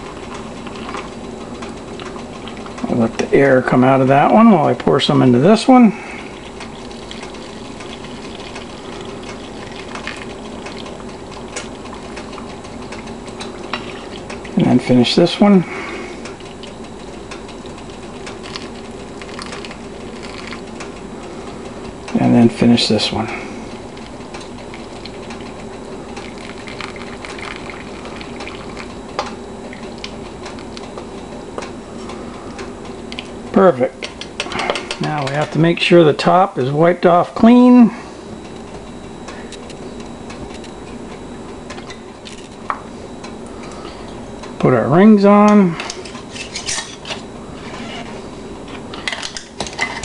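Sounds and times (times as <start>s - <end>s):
liquid pouring into glass jar: 26.3s - 28.9s.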